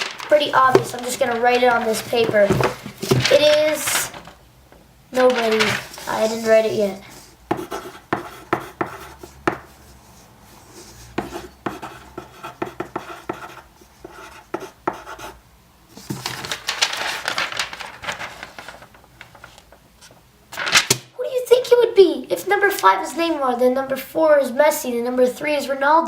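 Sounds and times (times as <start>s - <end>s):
pen writing on paper: 7.5s - 9.6s, 11.2s - 15.3s.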